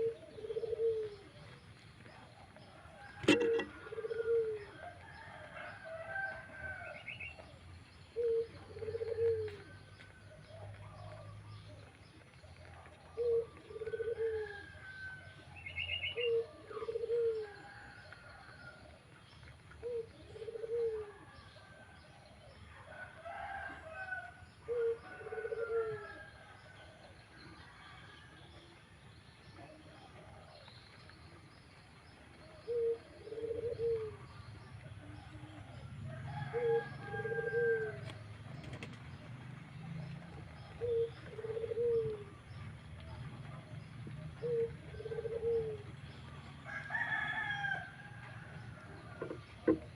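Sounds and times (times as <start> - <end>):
pigeon cooing: 0.0 - 1.6, 3.2 - 5.0, 8.2 - 9.8, 12.6 - 14.8, 16.0 - 17.8, 19.8 - 21.5, 24.6 - 26.3, 32.4 - 34.3, 36.4 - 38.9, 40.3 - 42.4, 43.5 - 46.2.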